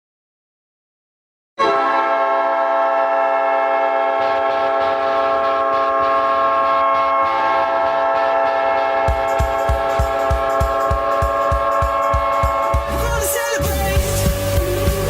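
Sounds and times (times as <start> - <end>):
arena goal horn blaring: 1.6 - 13.6
crowd cheering: 6.0 - 15.0
steady drum beat: 9.0 - 15.0.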